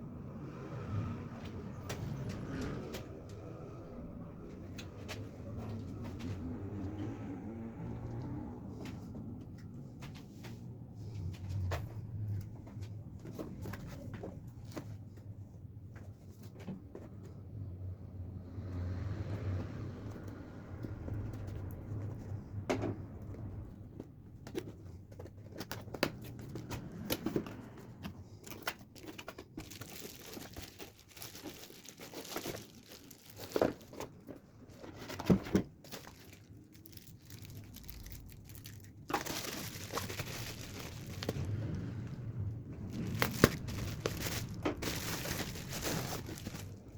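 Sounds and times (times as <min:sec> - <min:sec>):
plastic wrapping crinkling: 0:28.4 - 0:42.2, 0:42.8 - 0:46.9.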